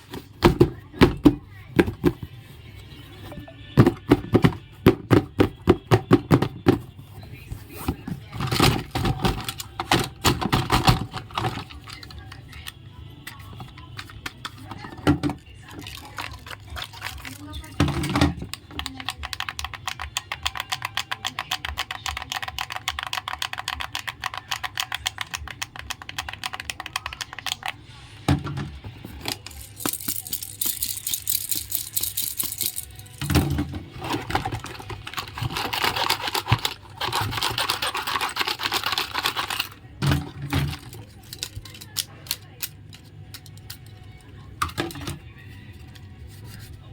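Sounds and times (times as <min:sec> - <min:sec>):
packaging rustling: 0:33.9 - 0:39.8.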